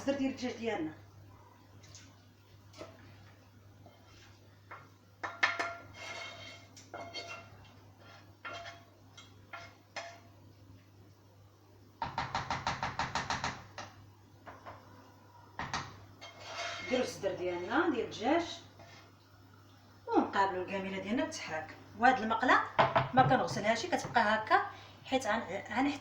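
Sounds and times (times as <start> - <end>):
utensils clinking against pots: 5.2 - 7.6.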